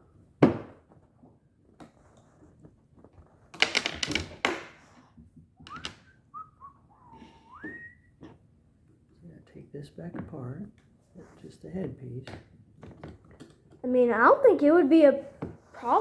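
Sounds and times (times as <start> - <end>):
short rising whistle: 6.3 - 8.1.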